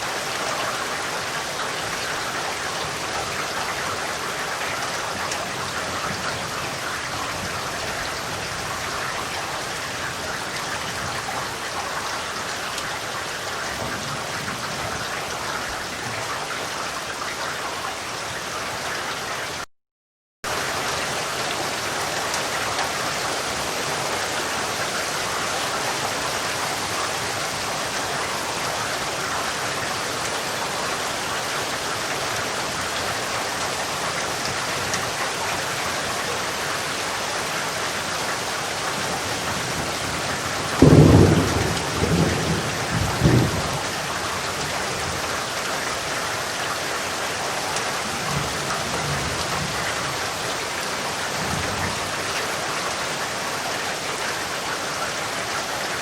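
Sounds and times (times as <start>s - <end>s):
steady rain: 0.0s - 19.7s, 20.5s - 56.0s
thunder crack and rumbles: 38.9s - 45.4s.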